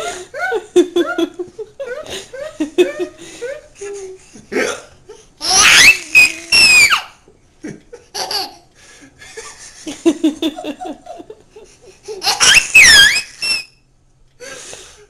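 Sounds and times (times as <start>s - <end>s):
baby laughing: 5.4s - 7.1s, 8.1s - 8.7s, 12.0s - 13.7s.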